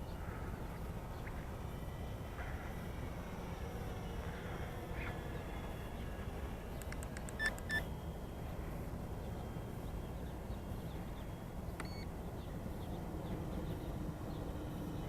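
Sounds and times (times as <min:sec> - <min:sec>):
low rumble of wind: 0:00.0 - 0:15.0
short electronic beeps: 0:07.4 - 0:07.9, 0:11.8 - 0:12.1.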